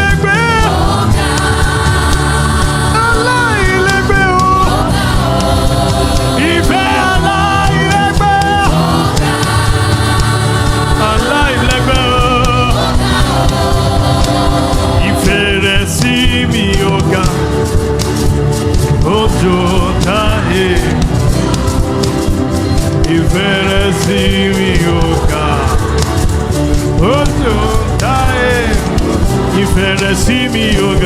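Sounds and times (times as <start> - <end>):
instrumental backing: 0.0 - 31.0
voices singing gospel: 0.0 - 31.0.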